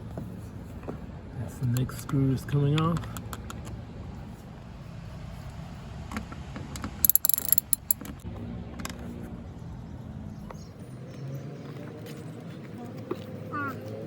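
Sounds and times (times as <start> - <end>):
hand ratchet clicking: 7.0 - 8.2.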